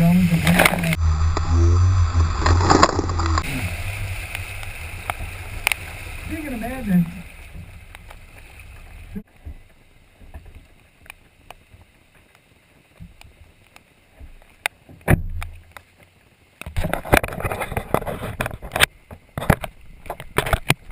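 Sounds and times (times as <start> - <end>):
floodwater splashing: 0.0 - 17.8
thump: 15.0 - 15.5.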